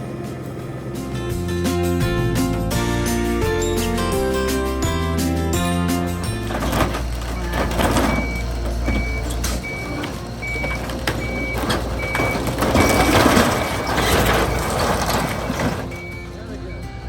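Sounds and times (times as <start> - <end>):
truck engine running: 0.0 - 17.0
truck reversing alarm beeping: 0.0 - 17.0.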